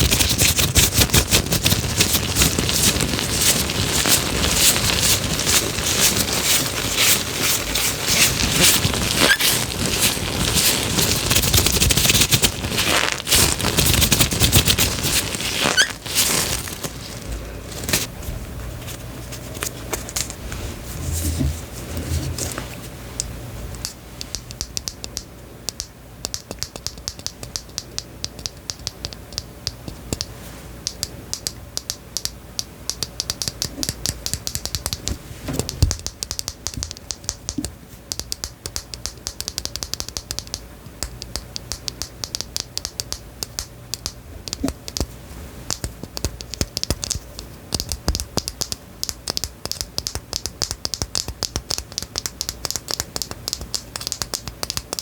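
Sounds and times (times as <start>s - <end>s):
light clicks and taps: 23.2s - 55.0s.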